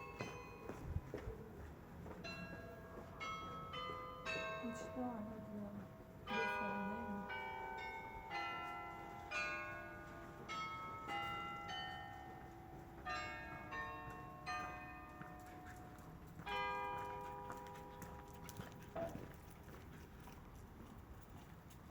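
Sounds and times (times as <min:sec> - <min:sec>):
church bells playing melody: 0:00.0 - 0:01.3, 0:02.0 - 0:18.6.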